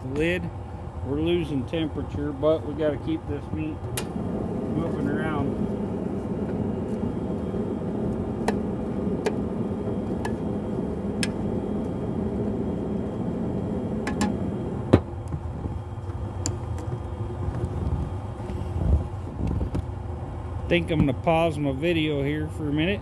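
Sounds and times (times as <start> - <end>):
low rushing noise: 3.0 - 15.9.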